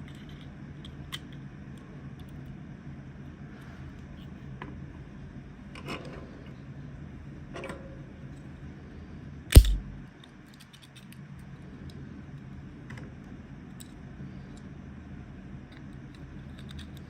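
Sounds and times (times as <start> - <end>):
sharp loud knock with thump: 9.6 - 10.0.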